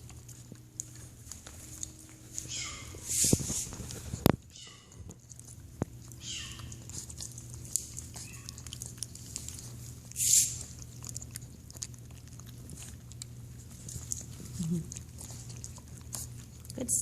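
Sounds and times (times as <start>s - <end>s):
cat chewing and licking: 0.0s - 17.0s.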